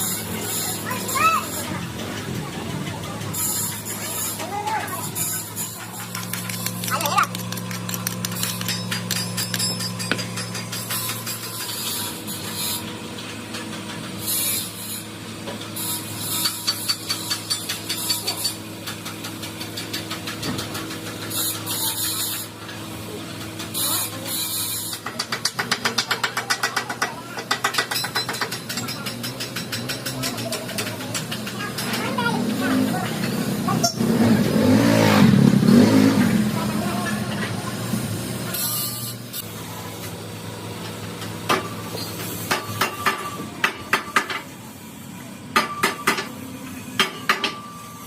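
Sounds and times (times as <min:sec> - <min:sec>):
workshop machinery humming: 0:00.0 - 0:48.0.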